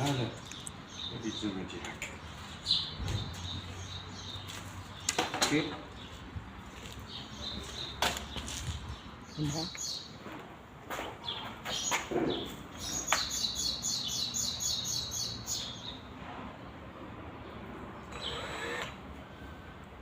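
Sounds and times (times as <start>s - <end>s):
bird chirping: 0.0s - 6.2s, 6.8s - 10.2s, 11.1s - 16.1s.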